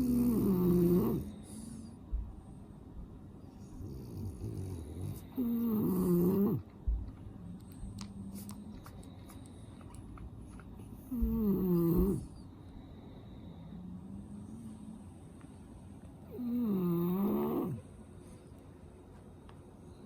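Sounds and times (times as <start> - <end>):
dog snoring: 0.0 - 2.0, 3.6 - 7.0, 11.0 - 12.5, 16.2 - 18.0
faint breathing: 0.8 - 5.5, 8.2 - 16.6.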